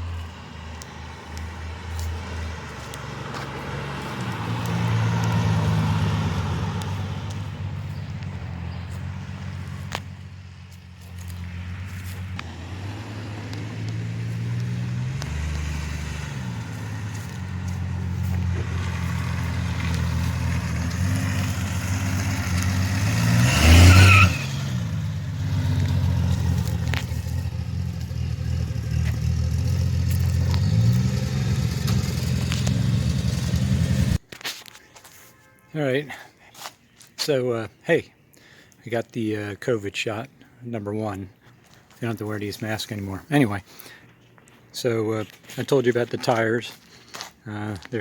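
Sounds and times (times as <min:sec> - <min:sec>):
car engine driving by: 0:00.0 - 0:34.2.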